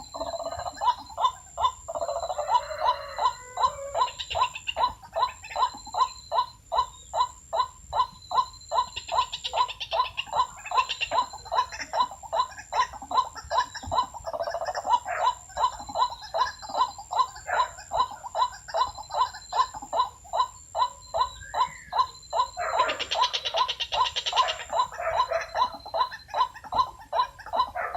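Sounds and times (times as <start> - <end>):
bird calling repeated notes: 0.0 - 27.9
faint steady high tone: 0.0 - 27.9
fast chattering bird notes: 0.0 - 27.9.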